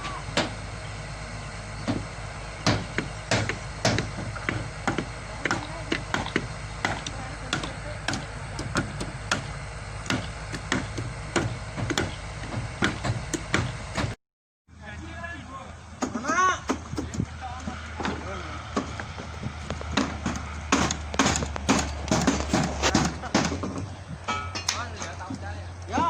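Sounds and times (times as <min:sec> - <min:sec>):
machine low hum: 0:00.0 - 0:26.0
sharp knocks and clacks: 0:18.8 - 0:24.9.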